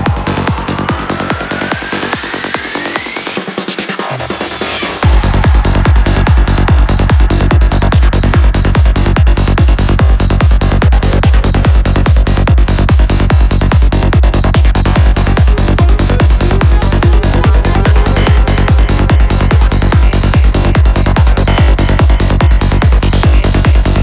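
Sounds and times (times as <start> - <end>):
kick drum: 0.0 - 3.6, 5.0 - 24.0
rolling bass line: 0.0 - 3.7, 4.3 - 24.0
synth layers: 0.0 - 9.4, 14.6 - 24.0.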